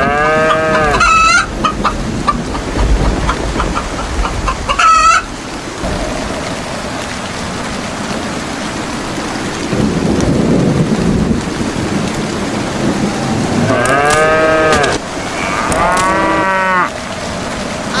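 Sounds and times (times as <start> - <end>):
cow mooing: 0.0 - 1.4, 13.0 - 16.9
low rumble of thunder: 0.0 - 18.0
steady rain: 0.0 - 18.0.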